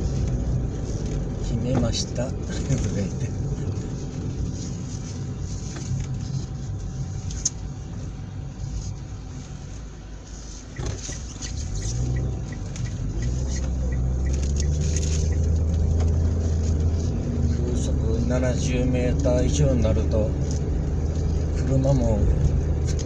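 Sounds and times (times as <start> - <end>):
car engine and road rumble: 0.0 - 23.0
regular light ticks: 10.8 - 16.2.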